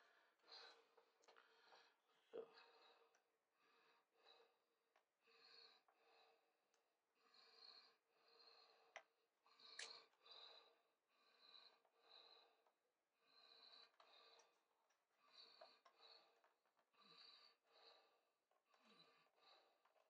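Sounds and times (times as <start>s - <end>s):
faint breathing: 0.0s - 20.0s.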